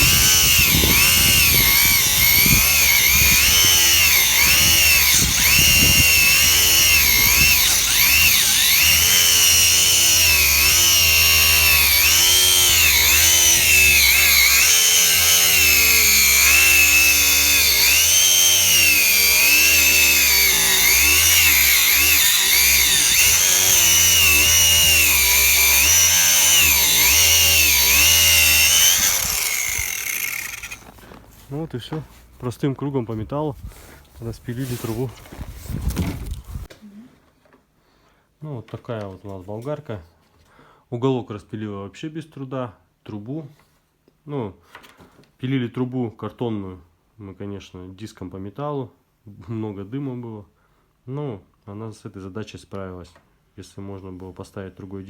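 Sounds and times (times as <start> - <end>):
angle grinder cutting cardboard: 0.0 - 31.6.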